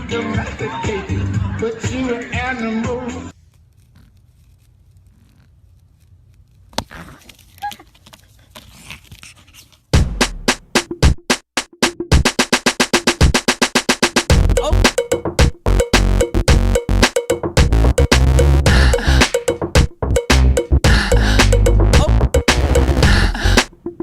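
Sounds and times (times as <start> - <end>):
clicks and rustles: 3.5 - 9.9
electronic track with drum-machine beat: 10.0 - 24.0.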